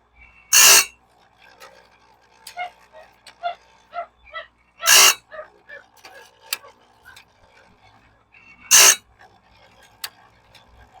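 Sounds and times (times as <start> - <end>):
sharpener grinding blade: 0.5 - 0.9, 4.9 - 5.2, 8.7 - 9.0.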